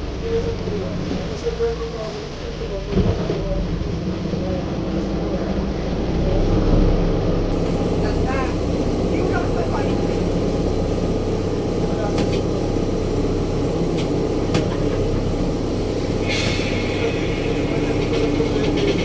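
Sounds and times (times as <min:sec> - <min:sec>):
boat engine droning: 0:07.5 - 0:19.0
hiss: 0:07.5 - 0:19.0.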